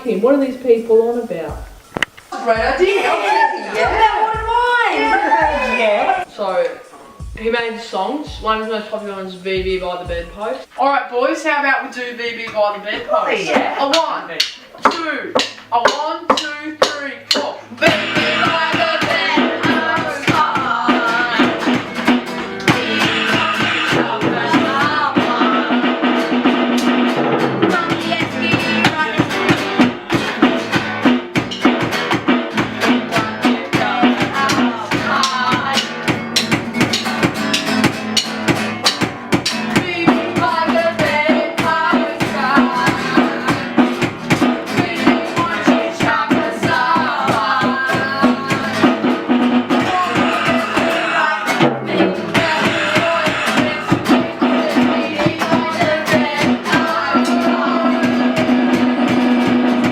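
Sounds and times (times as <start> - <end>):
band song with vocals: 14.5 - 31.7, 32.6 - 38.3, 39.4 - 59.9.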